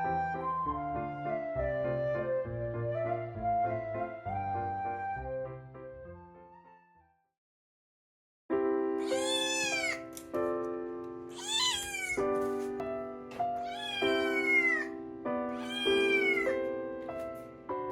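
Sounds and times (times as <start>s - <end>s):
gentle background music: 0.0s - 7.1s, 8.6s - 17.9s
cat meowing: 9.0s - 10.1s, 11.3s - 12.3s, 13.6s - 16.6s.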